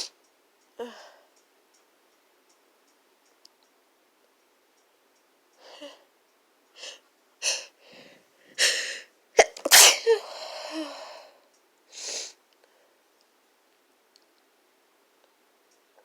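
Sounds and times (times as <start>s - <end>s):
person sneezing: 8.6s - 10.3s.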